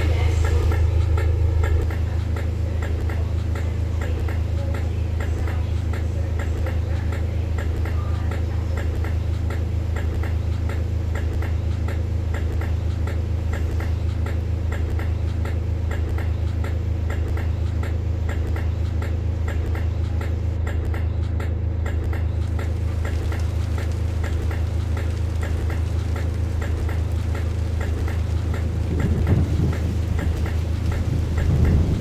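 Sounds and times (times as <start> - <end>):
regular ticking: 0.0 - 32.0
train low hum: 0.0 - 32.0.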